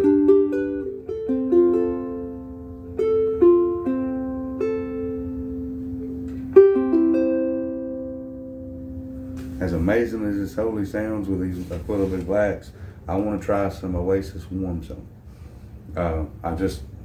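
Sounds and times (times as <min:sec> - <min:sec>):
fingerpicked ukulele: 0:00.0 - 0:09.6.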